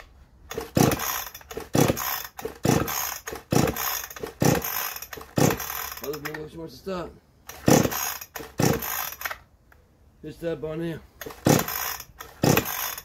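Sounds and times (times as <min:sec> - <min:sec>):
chainsaw starter rope pulled: 0:00.4 - 0:06.6, 0:07.4 - 0:09.5, 0:11.2 - 0:13.0.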